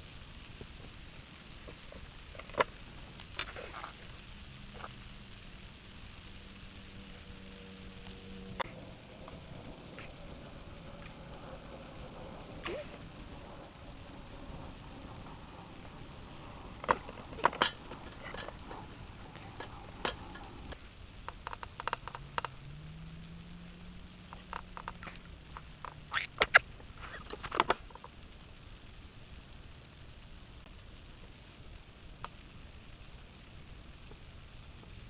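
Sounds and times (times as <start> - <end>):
faint hiss: 0.0 - 35.0
firewood crackling and popping: 0.0 - 35.0.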